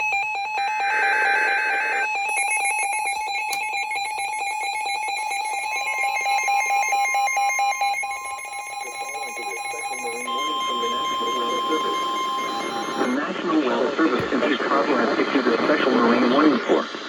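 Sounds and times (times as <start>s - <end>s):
rapid electronic beeping: 0.0s - 13.2s
steady alert tone: 0.5s - 2.6s
screeching digital data burst: 0.6s - 2.6s.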